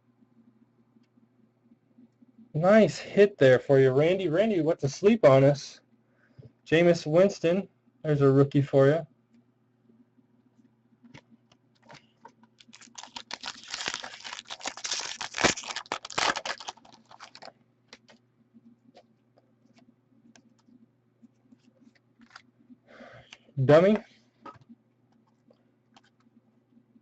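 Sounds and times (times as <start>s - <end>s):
foil wrapper crinkling: 11.8s - 18.2s.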